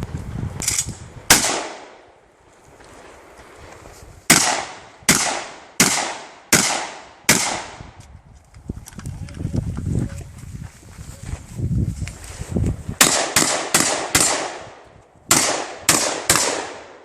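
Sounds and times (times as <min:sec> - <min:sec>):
shotgun shots with echo: 0:01.3 - 0:02.0, 0:04.3 - 0:07.8, 0:13.0 - 0:14.6, 0:15.3 - 0:17.0.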